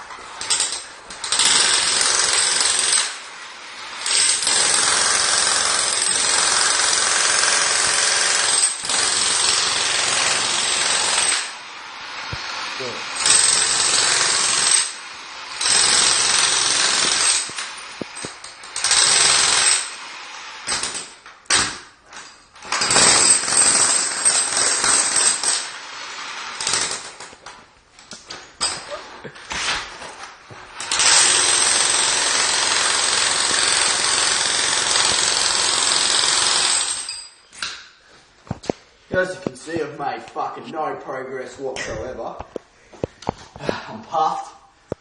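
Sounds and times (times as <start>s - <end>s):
jackhammer hammering tiles: 0.3s - 11.6s, 12.2s - 27.5s, 30.6s - 37.2s.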